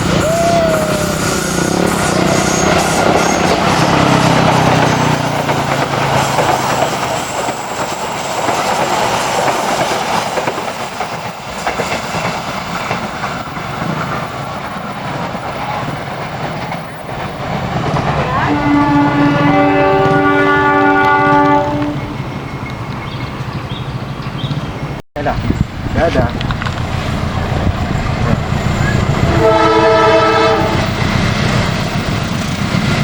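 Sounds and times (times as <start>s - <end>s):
train horn: 0.0s - 4.4s, 18.2s - 22.1s, 29.2s - 31.0s
wheels clacking over rail joints: 0.0s - 24.7s, 25.8s - 33.0s
train wheels rolling on rails: 0.0s - 33.0s.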